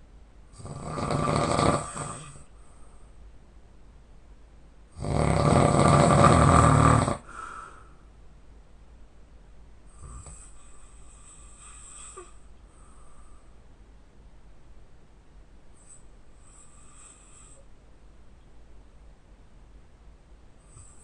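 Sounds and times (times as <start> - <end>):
man snoring loudly: 0.6 - 2.4, 5.0 - 7.3
quiet breath: 1.8 - 3.4, 7.2 - 8.2, 9.8 - 13.8, 15.7 - 17.9, 20.5 - 21.0.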